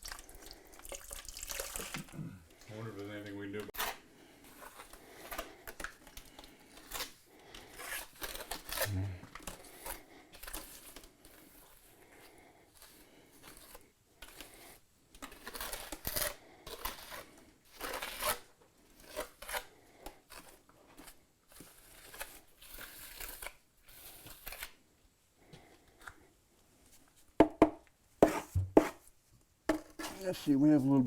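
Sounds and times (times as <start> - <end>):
trowel scraping mortar: 12.8 - 18.4, 28.2 - 29.0, 29.8 - 30.2.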